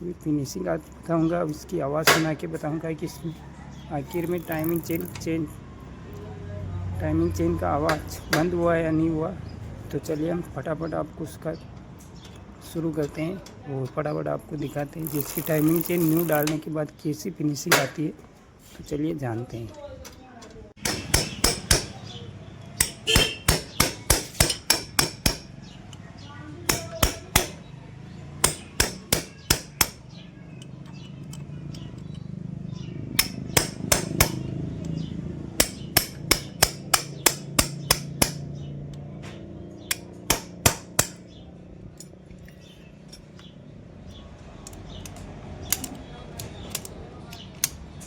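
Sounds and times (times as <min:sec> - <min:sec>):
hammer blows: 0:22.8 - 0:25.5.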